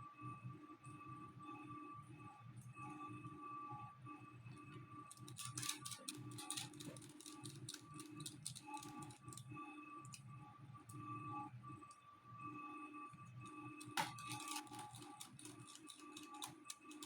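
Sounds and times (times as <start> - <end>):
quiet background music: 0.7 - 17.0
small clicks and rattles: 5.1 - 9.5, 13.8 - 17.0.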